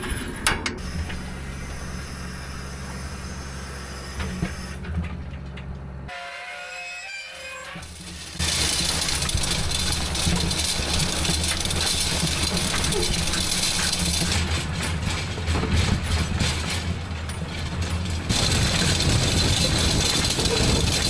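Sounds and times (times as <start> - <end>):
tractor engine running: 0.0 - 6.1, 7.8 - 21.0
hay machinery rumble and hiss: 7.8 - 21.0
short rattles and clatters: 7.8 - 21.0.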